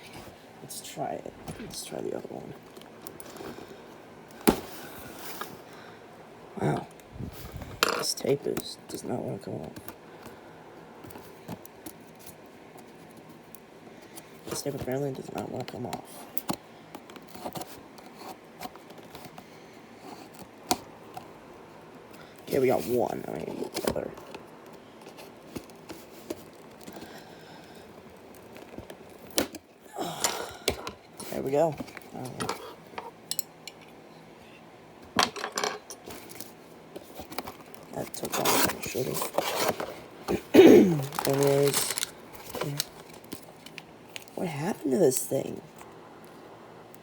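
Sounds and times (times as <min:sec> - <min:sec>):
plastic pieces clattering: 0:40.9 - 0:42.9.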